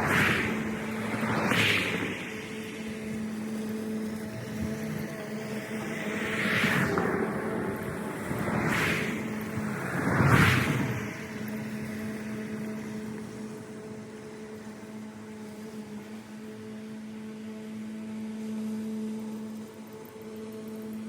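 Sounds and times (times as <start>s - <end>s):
loud whoosh: 0.0s - 3.7s, 5.8s - 12.5s
electric lawn tool motor humming: 0.0s - 21.0s.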